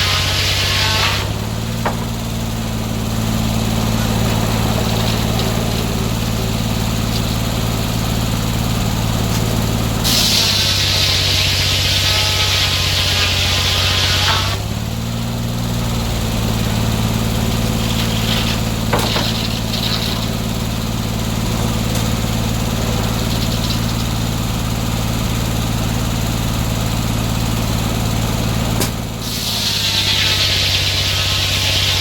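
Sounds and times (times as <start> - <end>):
saw blade cutting log: 0.0 - 25.8, 28.3 - 32.0
sawmill engine running: 0.0 - 32.0
saw blade spinning free: 3.6 - 8.4, 10.0 - 14.6, 17.4 - 20.7, 22.6 - 24.6, 29.4 - 32.0
brief rasp: 9.3 - 14.6, 17.8 - 20.4.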